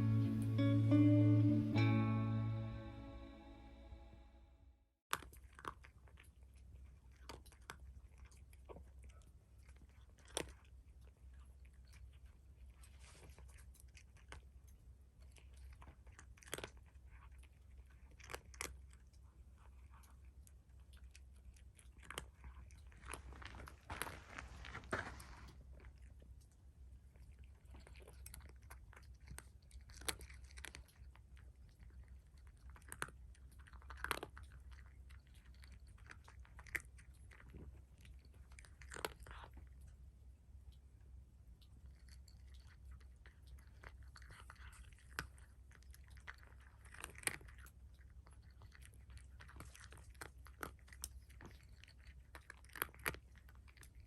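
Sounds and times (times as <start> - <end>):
low steady hum: 0.0 - 4.6
cat chewing food: 5.1 - 54.0.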